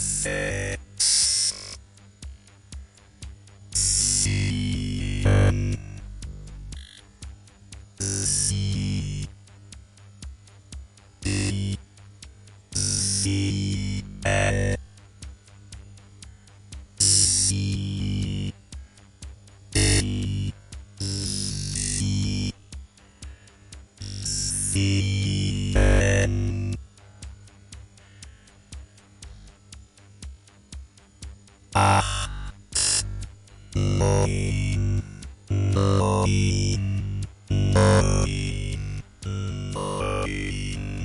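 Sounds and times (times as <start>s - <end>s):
synthesized sci-fi sound effects: 31.8s - 41.0s.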